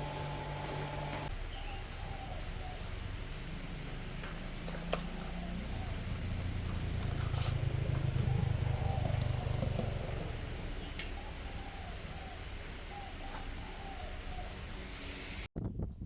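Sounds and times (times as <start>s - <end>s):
vehicle engine rumbling: 0.0s - 15.5s.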